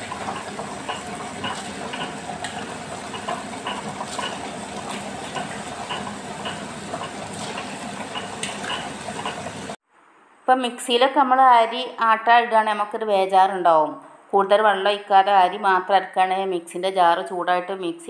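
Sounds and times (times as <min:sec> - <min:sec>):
wet grinder whirring: 0:00.0 - 0:09.8.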